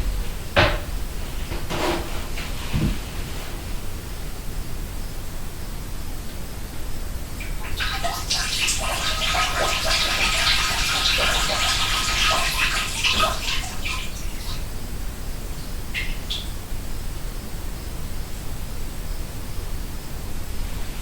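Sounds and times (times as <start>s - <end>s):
person urinating into a toilet: 7.4s - 14.8s
water drips: 7.4s - 14.8s, 15.6s - 16.6s.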